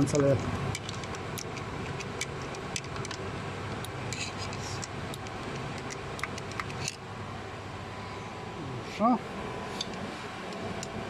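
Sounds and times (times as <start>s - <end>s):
workshop hum: 0.0s - 11.0s.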